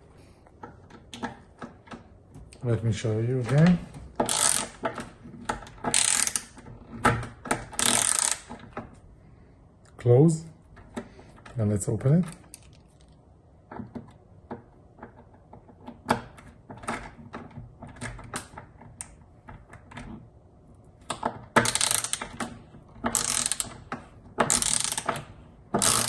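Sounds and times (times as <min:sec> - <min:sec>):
ratchet screwdriver clicking: 0:04.2 - 0:04.9, 0:05.9 - 0:06.5, 0:07.8 - 0:08.5, 0:21.6 - 0:22.3, 0:23.1 - 0:23.8, 0:24.4 - 0:25.2, 0:25.8 - 0:26.0.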